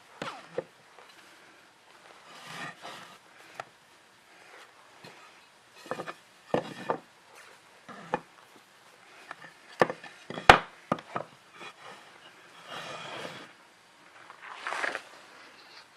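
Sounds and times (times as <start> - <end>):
wood sliding on wood: 2.1 - 3.7, 5.0 - 8.3, 9.2 - 13.6.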